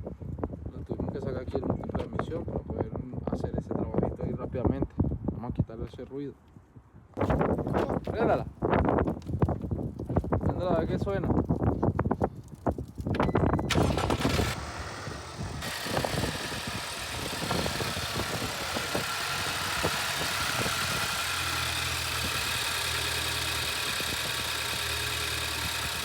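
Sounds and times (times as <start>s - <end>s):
car engine starting and idling: 13.2s - 26.0s.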